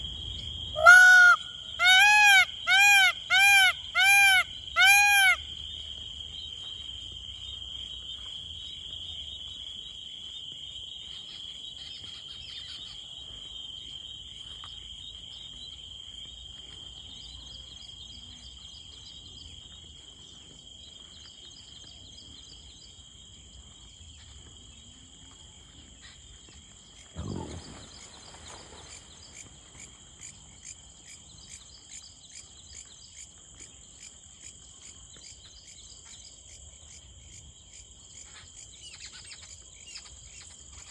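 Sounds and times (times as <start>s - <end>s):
peacock calling: 0.6s - 5.5s.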